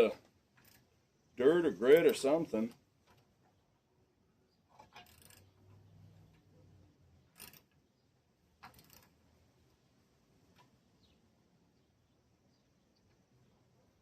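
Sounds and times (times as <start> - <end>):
clinks of tools and metal parts: 4.7 - 6.5.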